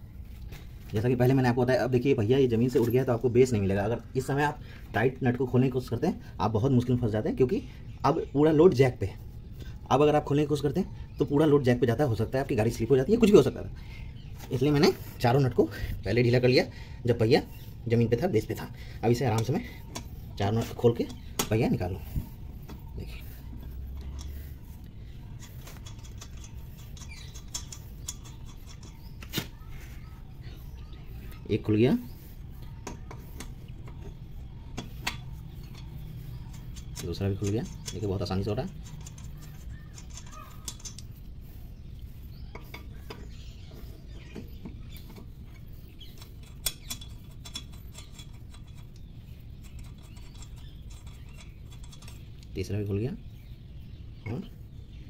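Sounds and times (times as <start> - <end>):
wheel nut clicking and scraping: 0.2 - 54.6
lug nut unscrewing clicks: 25.4 - 29.6, 32.9 - 38.1.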